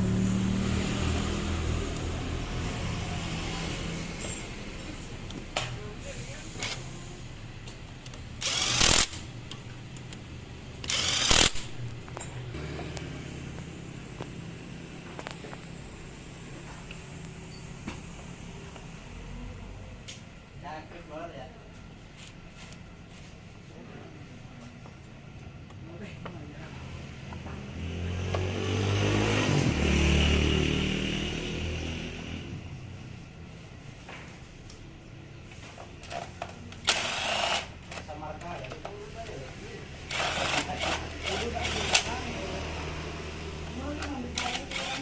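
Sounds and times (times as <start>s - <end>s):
motorcycle passing by: 0.0s - 4.8s, 12.4s - 20.0s, 27.4s - 32.8s, 41.3s - 44.4s
pneumatic air tool bursts: 8.4s - 9.3s, 10.8s - 11.8s, 36.8s - 37.8s, 40.1s - 42.2s, 44.4s - 45.0s.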